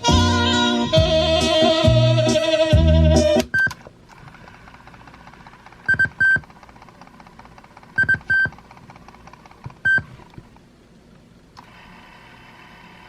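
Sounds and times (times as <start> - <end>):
low steady hiss: 8.6 - 13.0.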